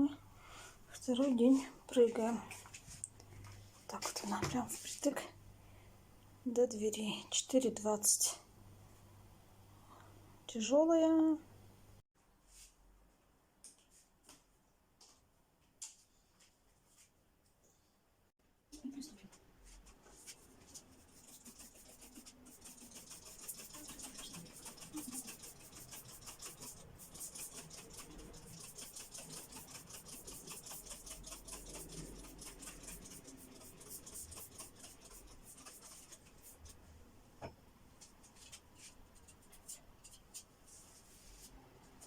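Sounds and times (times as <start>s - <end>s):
wallpaper scraping: 19.7s - 36.7s.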